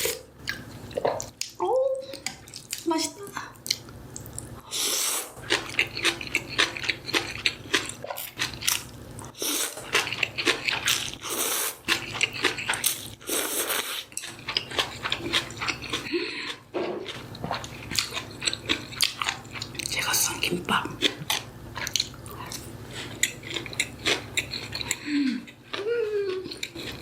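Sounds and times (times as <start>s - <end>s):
slurping noodles: 4.7s - 6.1s, 9.3s - 14.2s
wet chewing: 5.4s - 27.0s.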